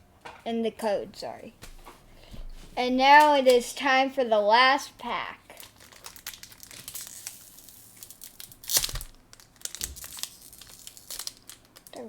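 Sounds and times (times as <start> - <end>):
foil wrapper crinkling: 5.5 - 12.0
foil tearing: 5.6 - 12.0.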